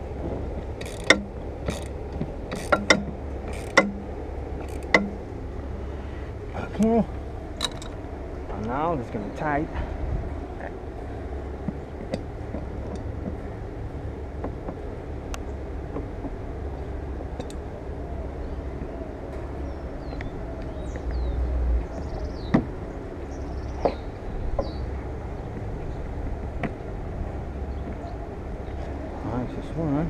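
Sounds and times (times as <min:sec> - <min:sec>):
low outdoor rumble: 0:00.0 - 0:30.0
tools clicking and knocking: 0:00.8 - 0:04.0, 0:04.6 - 0:05.2, 0:07.6 - 0:08.0.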